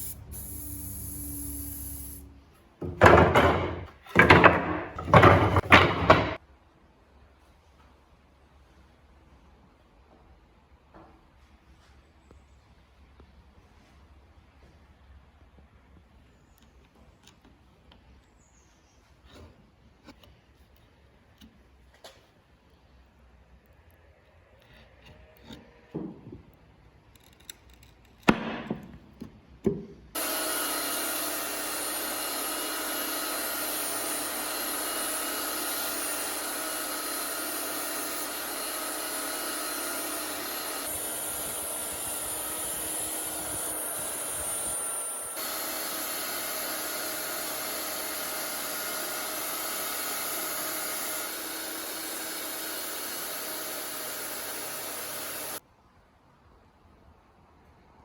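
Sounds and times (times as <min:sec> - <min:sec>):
power tool whining: 0:00.0 - 0:04.3, 0:30.2 - 0:55.6.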